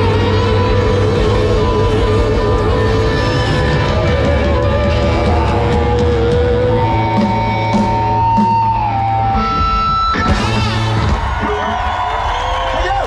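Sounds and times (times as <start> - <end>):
heavy bass: 0.0 - 11.8
live rock band music: 0.0 - 12.2.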